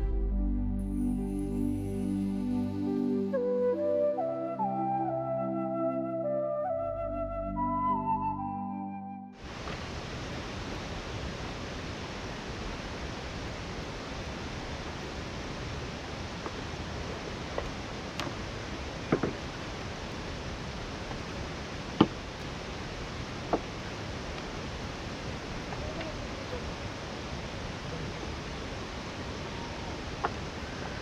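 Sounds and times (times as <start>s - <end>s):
rush of falling water: 9.4s - 31.0s.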